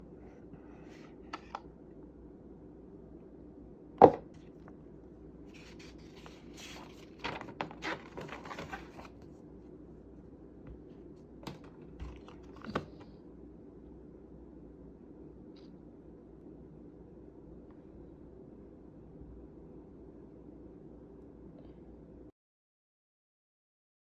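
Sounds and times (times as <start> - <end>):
knocks on a box: 4.0 - 4.3.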